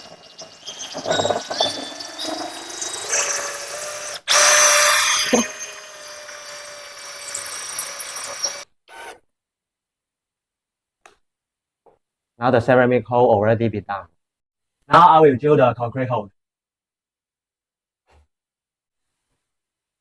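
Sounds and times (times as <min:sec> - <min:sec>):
power drill grinding through tile: 0:00.0 - 0:09.2.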